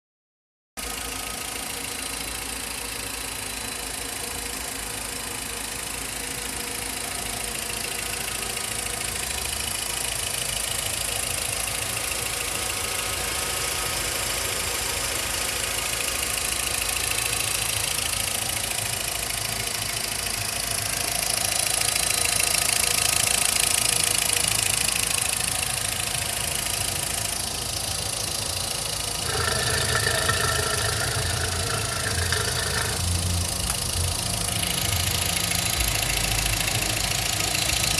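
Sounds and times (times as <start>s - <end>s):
car engine idling with rapid ticking: 0.8s - 37.9s
steady high tone: 29.2s - 37.4s.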